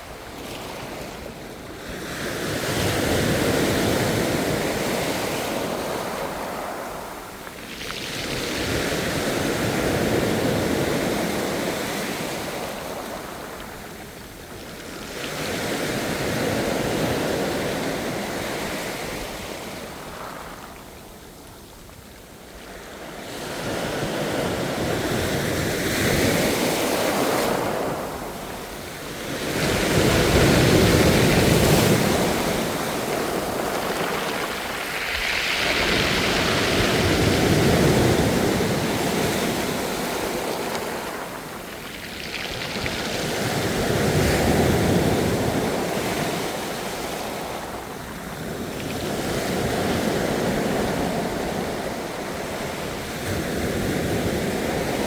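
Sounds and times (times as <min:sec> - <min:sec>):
ocean waves breaking: 0:24.4 - 0:55.0.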